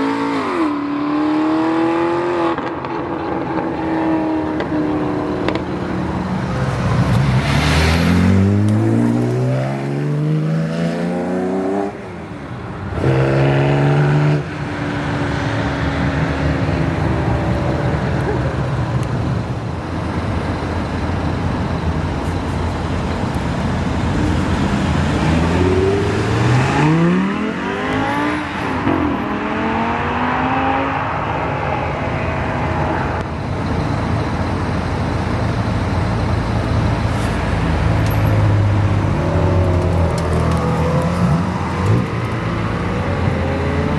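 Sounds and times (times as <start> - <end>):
sports car accelerating hard: 0.0 - 12.2, 24.1 - 33.2
traffic hum: 0.0 - 43.9.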